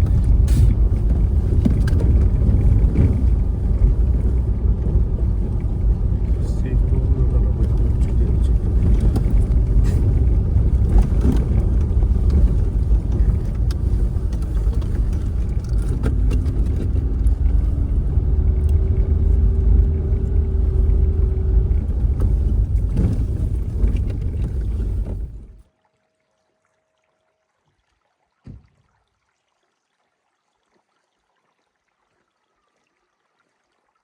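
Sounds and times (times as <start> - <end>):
car driving rumble: 0.0 - 25.7.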